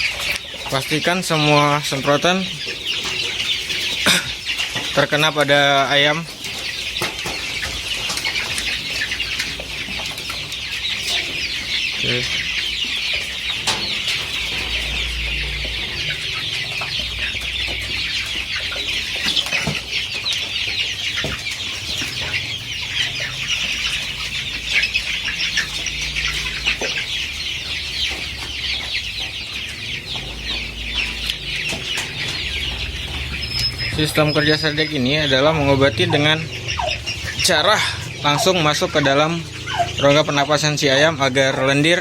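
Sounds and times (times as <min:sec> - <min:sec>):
chickens peeping and clucking: 0:00.0 - 0:42.0.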